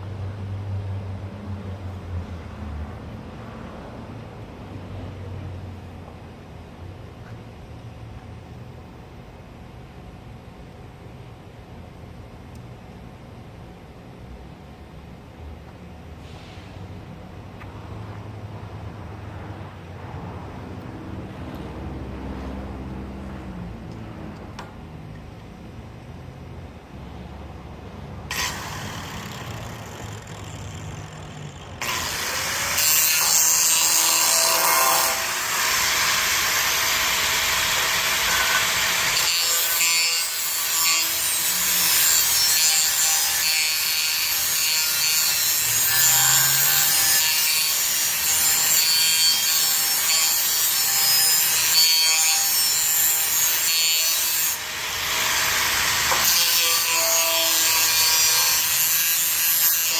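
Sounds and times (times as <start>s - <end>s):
power tool grinding: 28.3s - 59.9s.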